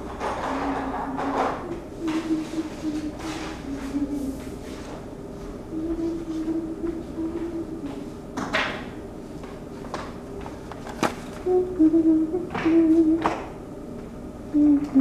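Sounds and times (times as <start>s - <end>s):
person humming a slow tune: 0.0s - 8.3s, 11.4s - 13.5s, 14.4s - 15.0s
clattering of things handled: 9.9s - 11.5s.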